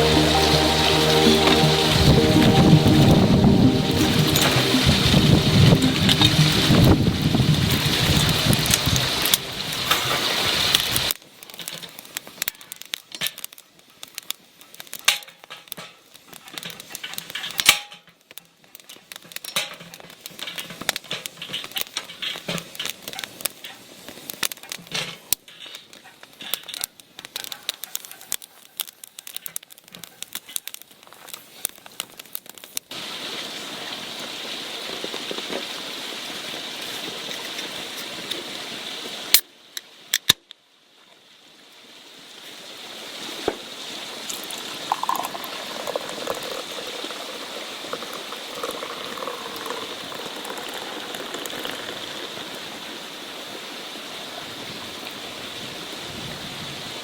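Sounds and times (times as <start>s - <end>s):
steady hiss: 41.7s - 57.0s.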